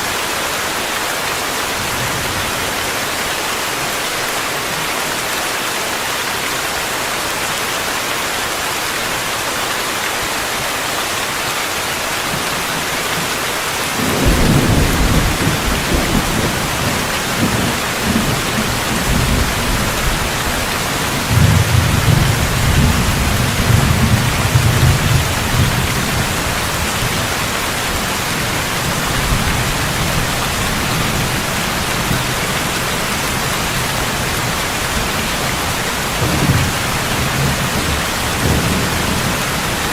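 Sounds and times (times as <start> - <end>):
heavy rain hiss: 0.0 - 39.9
low thunder rumble: 14.0 - 27.3.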